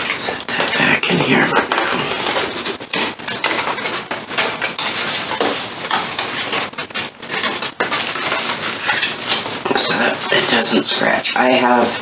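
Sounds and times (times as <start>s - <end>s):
rustling: 0.0s - 11.4s.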